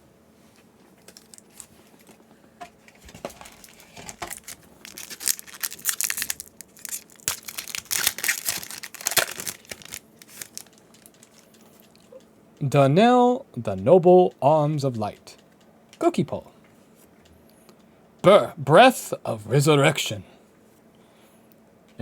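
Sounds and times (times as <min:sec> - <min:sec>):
foil wrapper tearing and crinkling: 0:01.1 - 0:01.7, 0:03.1 - 0:11.4.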